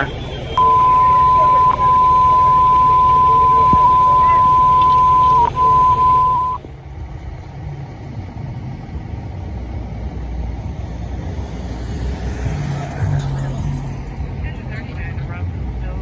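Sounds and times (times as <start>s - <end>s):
radio dispatch alert tone: 0.0s - 6.6s
fire truck engine rumbling: 0.0s - 16.0s.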